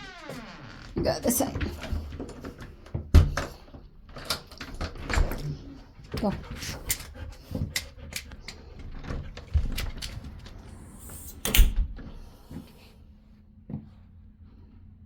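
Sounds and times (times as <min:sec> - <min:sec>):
door opening and shutting: 0:00.0 - 0:05.7, 0:09.0 - 0:12.3.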